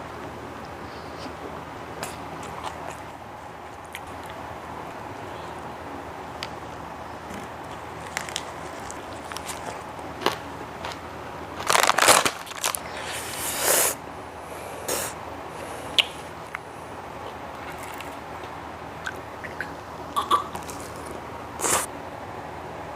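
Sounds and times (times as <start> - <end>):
chewing and slurping: 2.0 - 5.7, 17.2 - 21.9.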